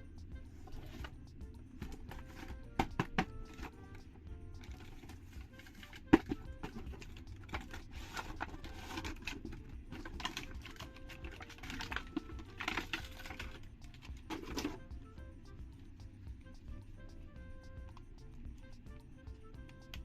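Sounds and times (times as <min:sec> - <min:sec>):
plastic toys clicking: 0:01.8 - 0:14.8.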